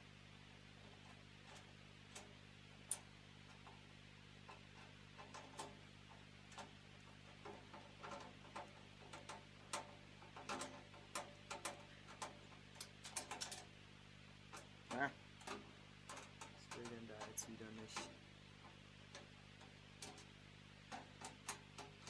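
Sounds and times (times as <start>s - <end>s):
faint steady hum: 0.0s - 22.0s
light clicks and taps on hardware: 14.5s - 20.3s.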